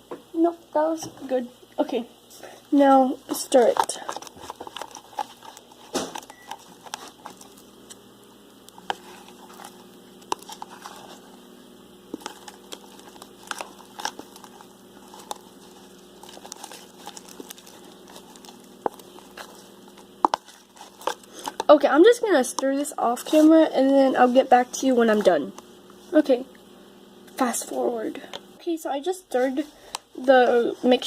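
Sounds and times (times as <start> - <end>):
spoon stirring slime in bowl: 3.3 - 8.0, 8.7 - 11.4, 12.1 - 25.7.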